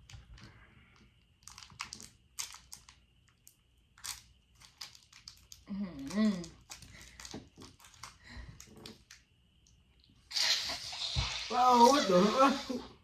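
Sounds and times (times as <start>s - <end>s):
snack wrapper crinkling: 1.4s - 9.2s
person exclaiming: 11.5s - 12.9s.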